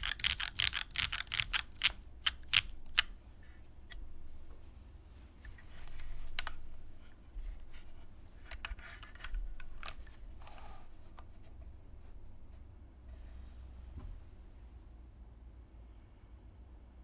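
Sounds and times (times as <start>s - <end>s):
mechanical keyboard typing: 0.0s - 3.2s.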